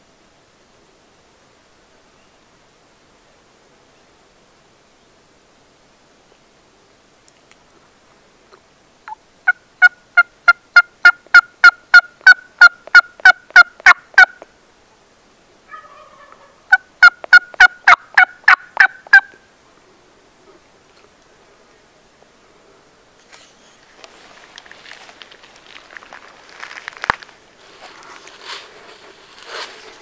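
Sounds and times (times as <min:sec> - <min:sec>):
turkey yelping: 0:09.5 - 0:14.4, 0:15.7 - 0:19.4.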